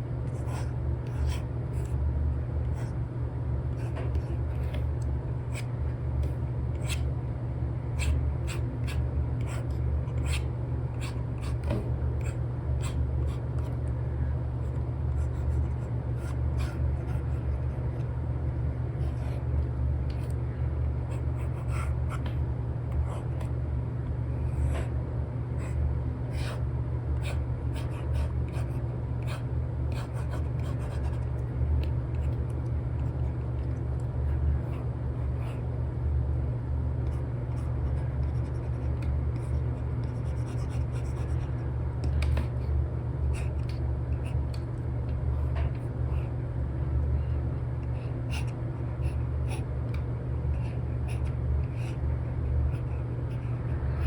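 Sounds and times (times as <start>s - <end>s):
steady low rumble: 0.0s - 54.0s
stylus tapping and scratching on screen: 0.3s - 2.0s, 3.7s - 7.1s, 8.0s - 13.8s, 14.6s - 18.1s, 20.1s - 20.4s, 21.1s - 23.6s, 27.2s - 35.6s, 37.0s - 42.7s, 43.3s - 44.8s, 47.8s - 52.0s, 52.6s - 54.0s.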